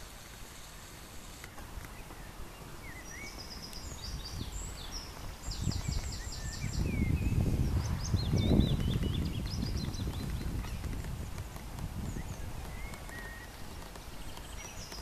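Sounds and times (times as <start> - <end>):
birds singing: 0.0 - 15.0.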